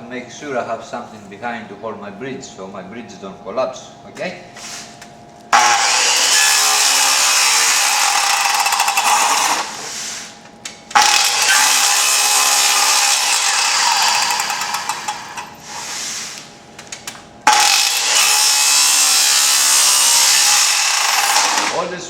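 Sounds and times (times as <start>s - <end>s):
circular saw cutting wood: 5.5s - 16.5s, 17.5s - 22.0s.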